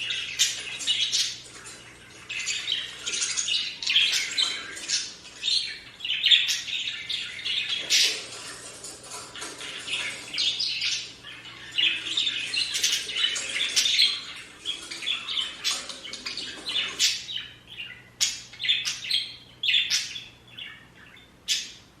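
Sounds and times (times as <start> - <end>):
budgerigars chirping and warbling: 0.0 - 22.0.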